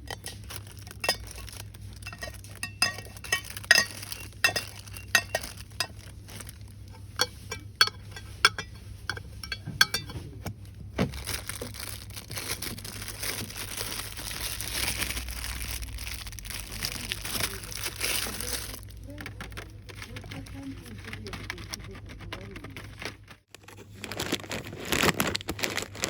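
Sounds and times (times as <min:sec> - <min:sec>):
packaging crinkling and rustling: 0:00.0 - 0:07.4, 0:09.8 - 0:26.0
taps and clinks on hard items: 0:00.0 - 0:10.2.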